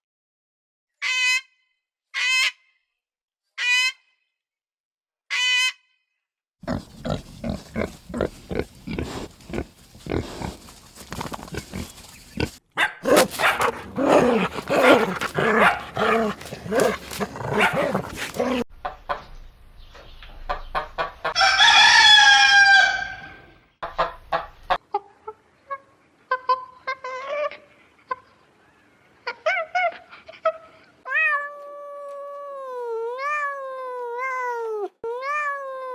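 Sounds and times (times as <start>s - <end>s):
chickens clucking: 6.7s - 18.6s
rooster crowing: 21.4s - 23.4s.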